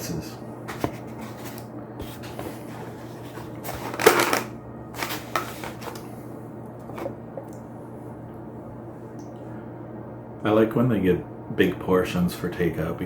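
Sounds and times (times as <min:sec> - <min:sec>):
low room hum: 0:00.0 - 0:13.0
takeout container rustling: 0:00.7 - 0:06.2.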